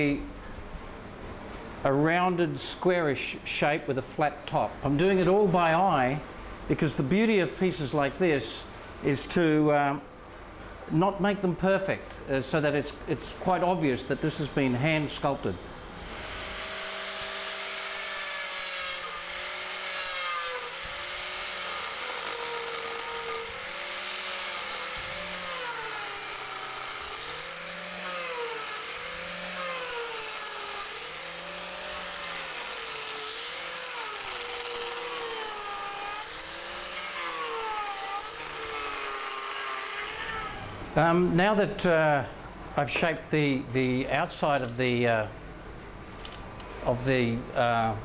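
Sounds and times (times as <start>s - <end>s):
angle grinder shaving wood: 13.6s - 40.9s.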